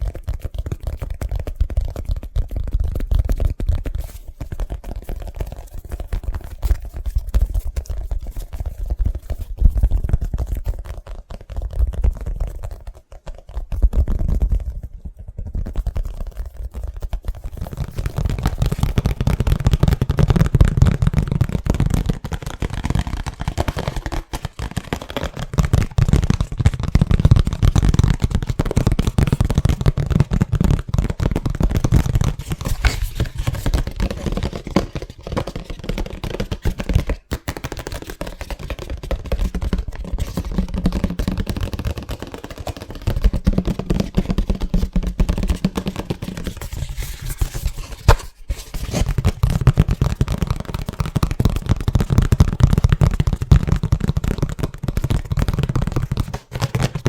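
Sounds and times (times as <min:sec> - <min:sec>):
fast tapping on an object: 0:00.0 - 0:57.0.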